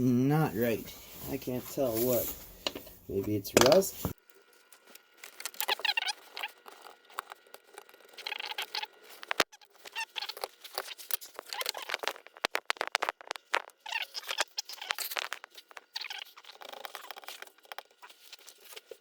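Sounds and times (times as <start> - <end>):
squeaky rubbing: 5.6 - 19.0.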